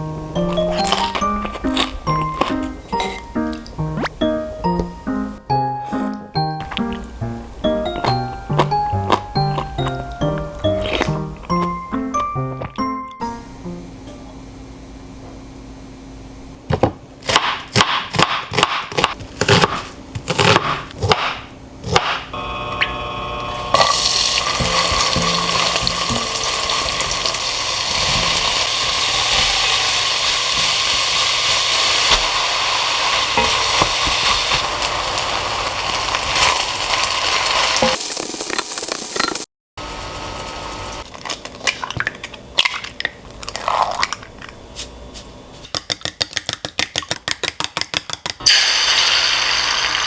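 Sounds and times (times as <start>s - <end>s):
food sizzling in a frying pan: 23.6s - 39.4s, 48.5s - 50.0s.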